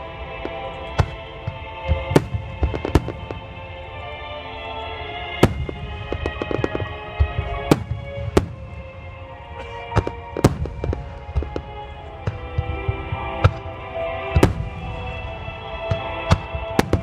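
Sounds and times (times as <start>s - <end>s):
fireworks bangs: 0.0s - 17.0s
music: 0.0s - 17.0s
fireworks crackling pops: 0.4s - 3.4s, 5.3s - 13.8s, 14.4s - 17.0s.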